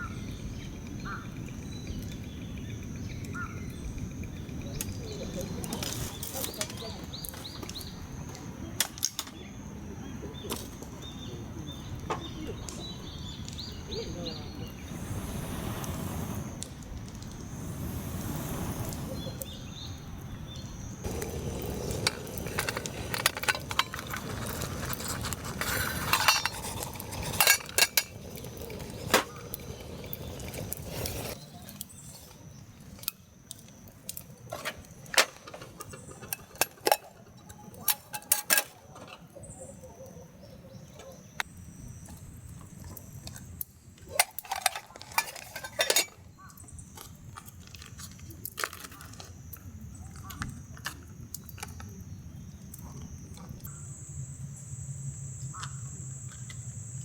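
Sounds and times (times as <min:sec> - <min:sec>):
dishes and cutlery clinking: 0:44.2 - 0:46.2.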